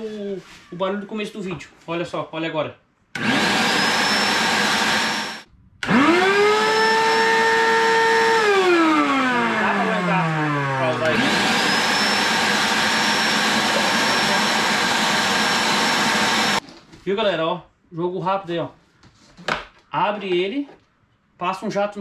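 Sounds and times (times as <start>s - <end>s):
vacuum cleaner motor whining: 3.2s - 16.6s.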